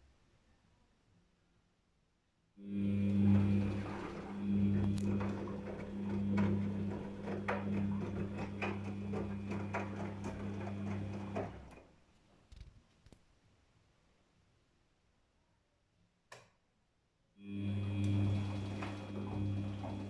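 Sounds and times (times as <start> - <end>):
washing machine humming: 2.6 - 11.9, 17.4 - 20.0.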